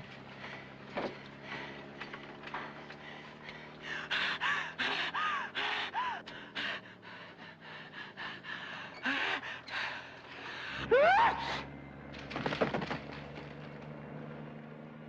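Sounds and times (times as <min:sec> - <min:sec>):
gasping breaths: 0:00.4 - 0:11.7.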